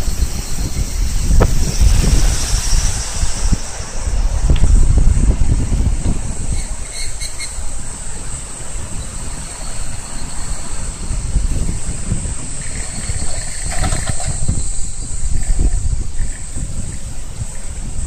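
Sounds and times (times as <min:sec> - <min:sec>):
cicadas droning: 0:00.0 - 0:18.0
wind buffeting microphone: 0:00.0 - 0:18.0.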